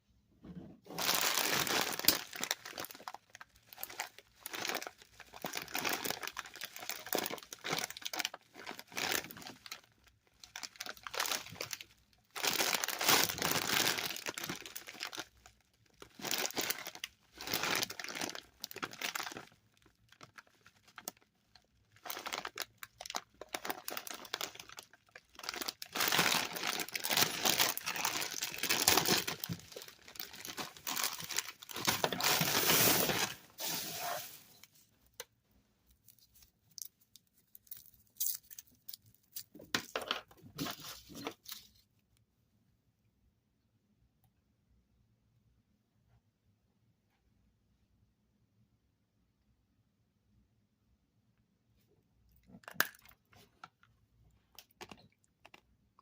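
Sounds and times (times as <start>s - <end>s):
plastic packaging crinkling: 0.9s - 34.9s.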